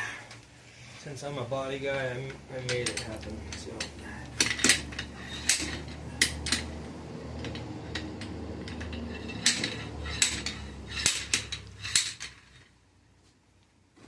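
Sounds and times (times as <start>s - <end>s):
low steady hum: 0.0s - 14.0s
metal tools clinking and clanking: 2.5s - 12.7s.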